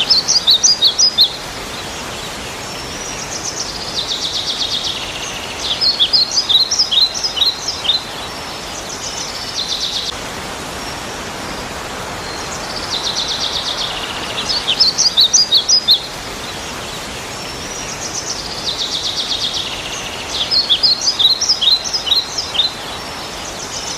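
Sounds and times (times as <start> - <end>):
bird singing buzzy trill: 0.0 - 2.0, 3.0 - 10.1, 12.2 - 16.1, 17.6 - 23.1.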